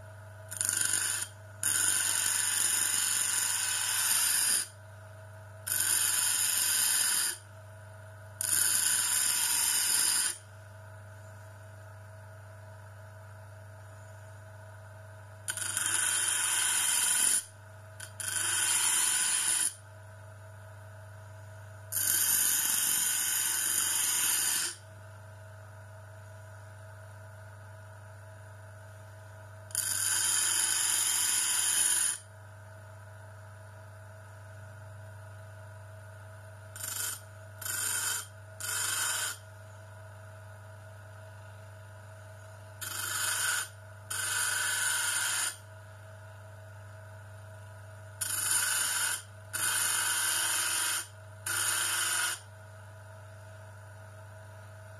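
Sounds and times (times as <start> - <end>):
metal grinding on abrasive wheel: 18.1 - 19.8.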